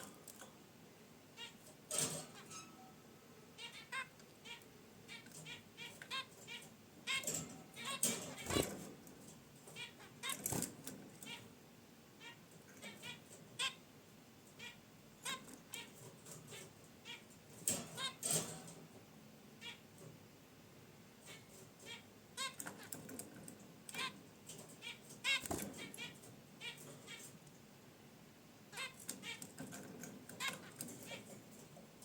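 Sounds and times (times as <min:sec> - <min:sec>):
finches honking calls: 0:01.4 - 0:01.7, 0:03.6 - 0:08.8, 0:09.7 - 0:10.5, 0:11.2 - 0:11.5, 0:12.2 - 0:13.8, 0:14.6 - 0:18.4, 0:19.6 - 0:19.9, 0:21.2 - 0:22.9, 0:23.9 - 0:24.2, 0:24.8 - 0:27.4, 0:28.7 - 0:29.5
rustling in cage: 0:15.2 - 0:18.9.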